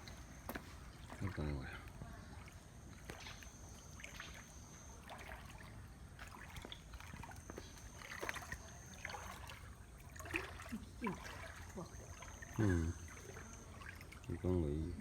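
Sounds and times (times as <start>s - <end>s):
thin high steady tone: 11.8s - 15.0s.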